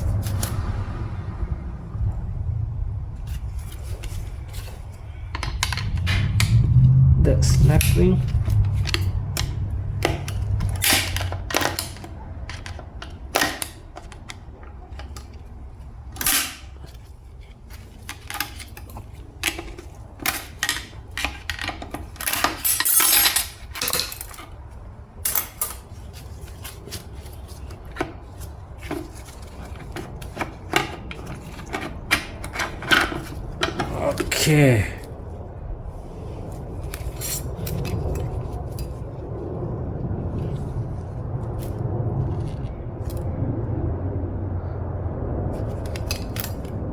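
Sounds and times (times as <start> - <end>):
metal parts clinking and clattering: 3.8 - 6.6, 7.7 - 15.3, 16.1 - 17.1, 17.7 - 24.6, 25.2 - 28.0, 28.8 - 34.4.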